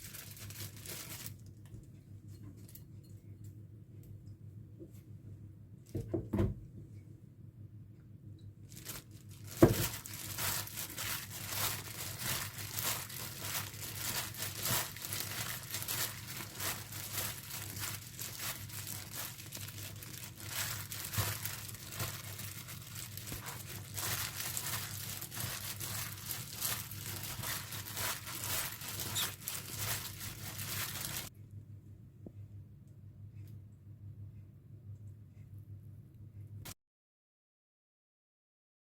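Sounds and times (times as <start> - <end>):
crinkling and rustling: 0.0 - 3.2, 8.6 - 31.3.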